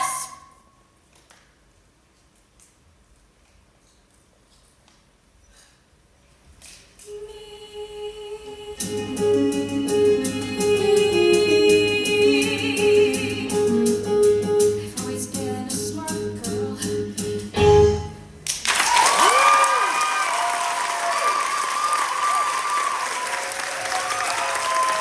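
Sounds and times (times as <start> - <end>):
musical accompaniment with steady beat: 8.8 - 18.4
audience applause: 18.6 - 25.0
cheering whoops: 18.7 - 25.0.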